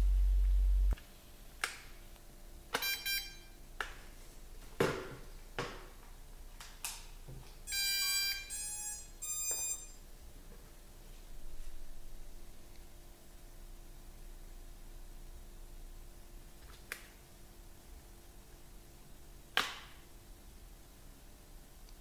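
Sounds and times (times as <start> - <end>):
electronic beeps: 2.8 - 3.5, 7.7 - 10.0.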